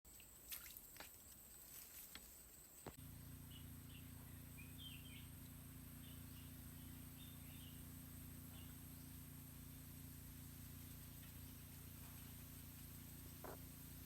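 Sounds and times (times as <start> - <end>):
steady low hum: 0.2 - 14.0
faint high chirps: 2.8 - 14.0.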